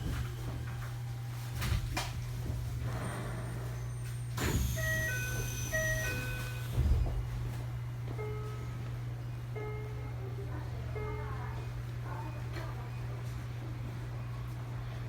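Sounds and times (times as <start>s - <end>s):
electric train humming: 3.7s - 10.3s.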